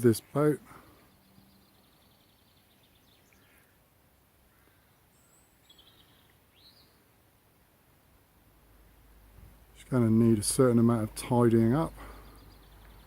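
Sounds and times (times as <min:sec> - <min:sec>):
faint bird chirps: 0:00.0 - 0:07.3, 0:11.6 - 0:13.0.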